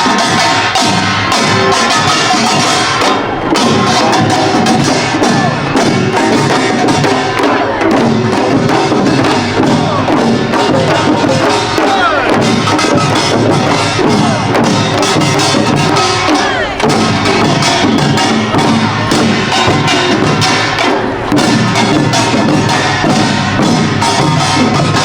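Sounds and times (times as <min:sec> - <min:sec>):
drums playing fast rhythm: 0:00.0 - 0:25.0.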